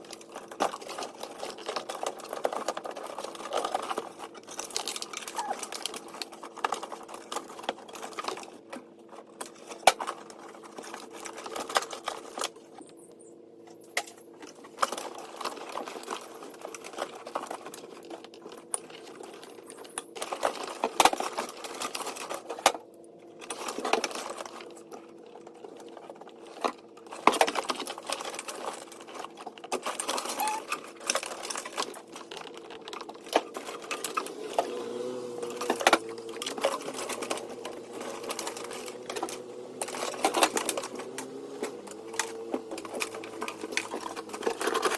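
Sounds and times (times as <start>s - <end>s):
clicking and rattling: 35.4s - 44.9s.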